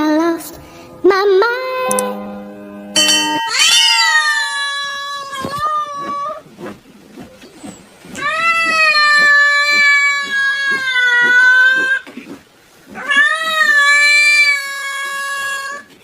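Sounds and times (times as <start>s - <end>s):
cat yowling: 3.4s - 6.4s, 8.2s - 12.0s, 13.0s - 15.9s.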